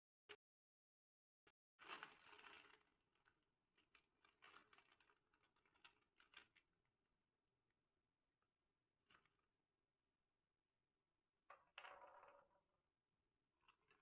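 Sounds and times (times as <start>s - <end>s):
plastic snack packet crinkling: 1.8s - 6.7s.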